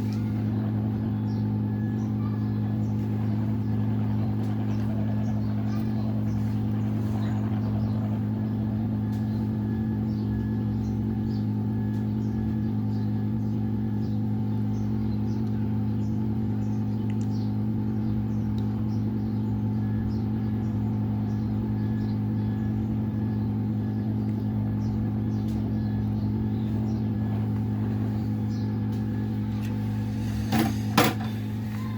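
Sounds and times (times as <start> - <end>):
low electrical hum: 0.0 - 31.9.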